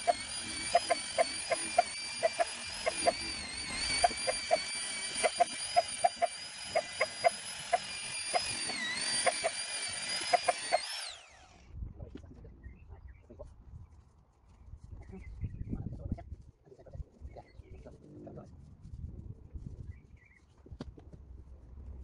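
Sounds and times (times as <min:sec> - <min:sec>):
electric drill motor whine: 0:00.0 - 0:11.8.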